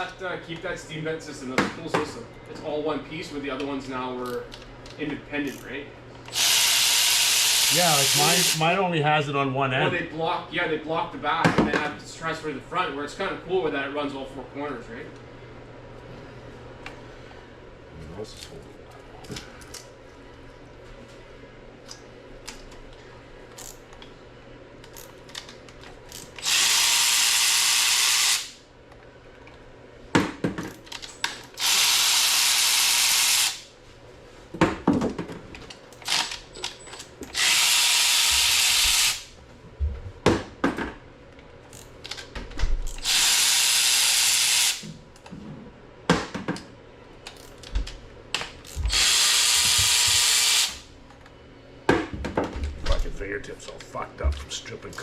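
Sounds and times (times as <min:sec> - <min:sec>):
power tool spinning bolts: 0:06.3 - 0:08.6, 0:26.1 - 0:28.6, 0:31.6 - 0:33.6, 0:36.0 - 0:39.3, 0:42.9 - 0:44.8, 0:48.6 - 0:50.8.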